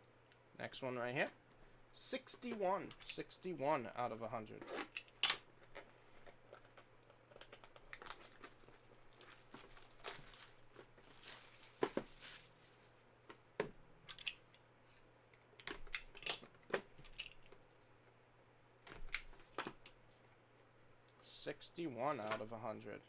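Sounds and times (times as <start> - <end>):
cardboard packaging crinkling and tearing: 6.5 - 13.0.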